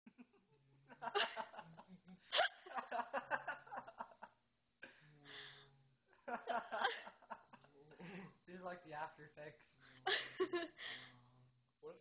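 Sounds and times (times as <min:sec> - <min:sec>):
people laughing and giggling: 0:00.0 - 0:05.5, 0:06.2 - 0:08.4, 0:10.0 - 0:11.1
breathy hiss: 0:04.8 - 0:11.5.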